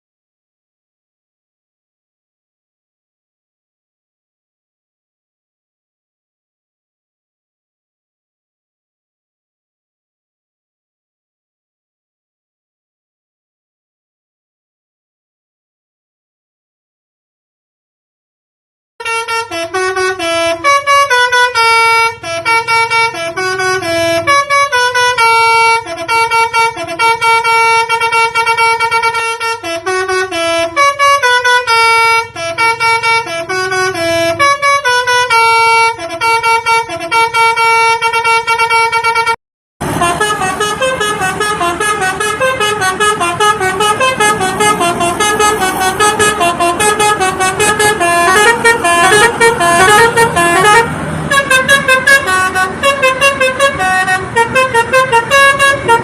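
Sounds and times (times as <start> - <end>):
multi-tone musical horn tune: 19.0 - 56.0.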